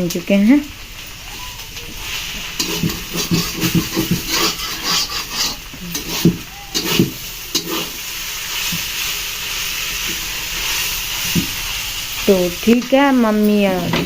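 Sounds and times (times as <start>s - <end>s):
frying sizzle: 0.0s - 14.0s
spatula scraping pan: 1.9s - 12.8s.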